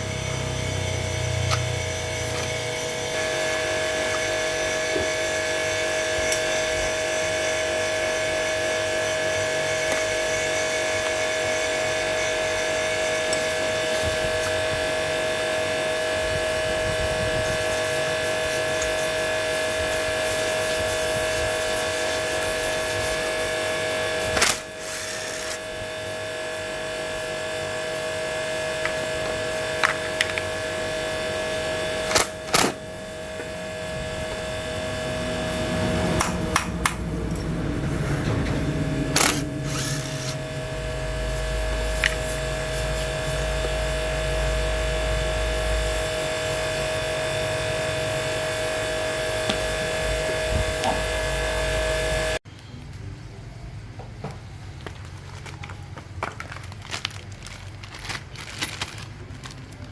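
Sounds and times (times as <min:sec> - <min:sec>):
mechanical hum with whining tone: 0:00.0 - 0:59.9
deep low rumble: 0:35.2 - 0:45.9.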